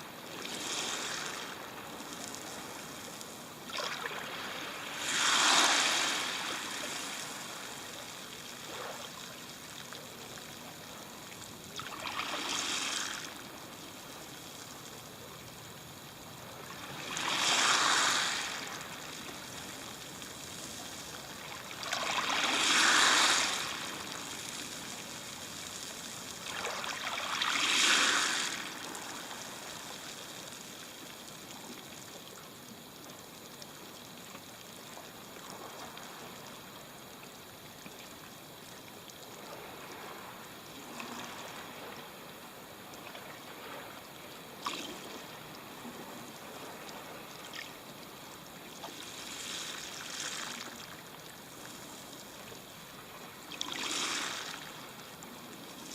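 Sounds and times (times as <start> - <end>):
waves washing up pebble beach: 0.2 - 3.0, 3.6 - 8.2, 11.8 - 13.5, 16.7 - 19.6, 21.3 - 25.5, 26.4 - 29.9, 53.6 - 54.6.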